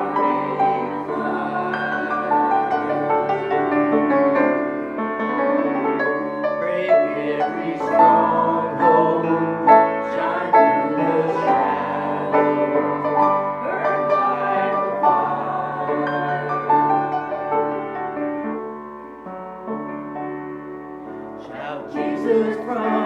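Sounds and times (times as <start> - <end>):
piano worship music: 0.0 - 23.0.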